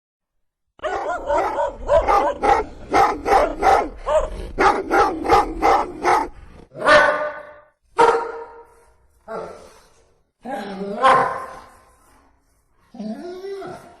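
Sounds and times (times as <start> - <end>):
dog barking: 0.8 - 9.7, 11.0 - 11.9.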